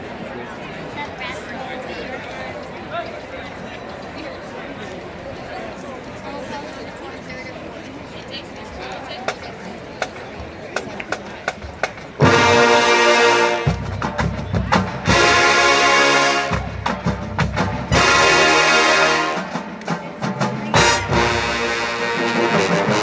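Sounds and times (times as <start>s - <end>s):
drums: 10.0s - 23.0s
marching band brass chords: 11.4s - 23.0s.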